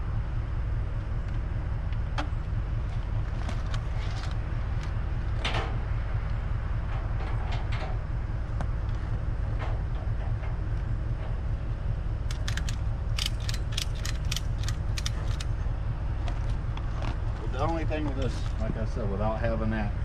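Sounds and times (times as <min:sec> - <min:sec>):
steady low rumble: 0:00.0 - 0:20.0
metallic clicks and clatters: 0:12.3 - 0:15.6.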